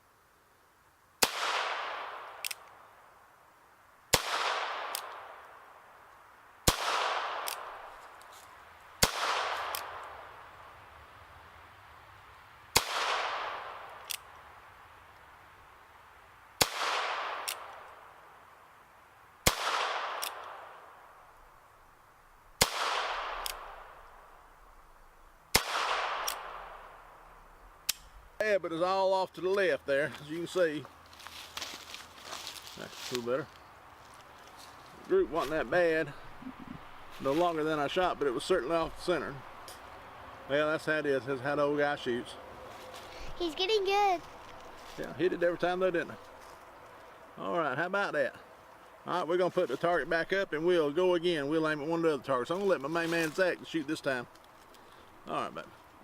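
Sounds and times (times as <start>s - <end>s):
revolver gunshots with echo: 1.2s - 2.4s, 4.1s - 5.4s, 6.6s - 7.8s, 9.0s - 10.2s, 12.7s - 13.9s, 16.6s - 17.8s, 19.4s - 20.8s, 22.6s - 24.0s, 25.5s - 27.1s.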